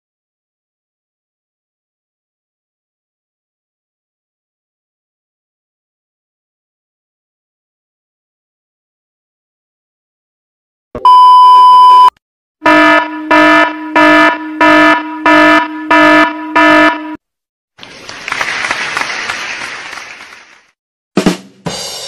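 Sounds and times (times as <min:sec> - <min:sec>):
steady beep: 0:11.0 - 0:17.2
harsh alarm buzzer: 0:12.6 - 0:17.2.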